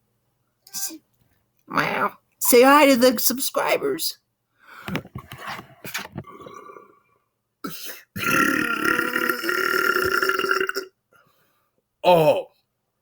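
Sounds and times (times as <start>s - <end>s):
man belching loudly: 8.1s - 11.0s.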